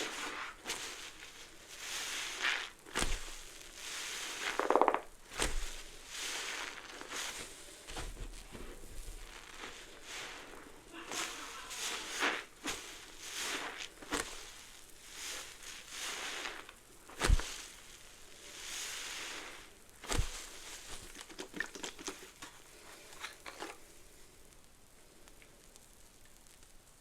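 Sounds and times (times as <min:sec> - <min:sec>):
soapy sponge squeezing: 0:00.0 - 0:23.8.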